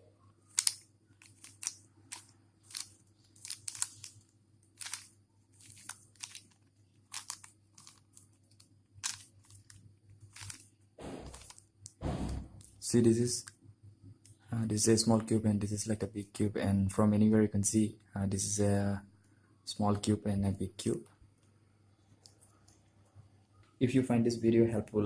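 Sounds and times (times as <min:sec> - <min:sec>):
plastic cube layers clicking: 0:00.5 - 0:04.2, 0:04.8 - 0:10.7.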